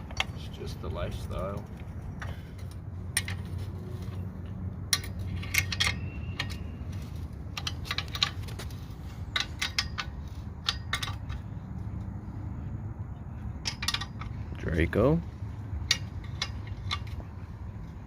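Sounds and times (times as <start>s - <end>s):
steady low hum: 0.0s - 18.0s
metal tools clicking and clinking: 2.2s - 4.2s, 4.8s - 11.6s, 13.6s - 14.8s, 15.8s - 17.4s.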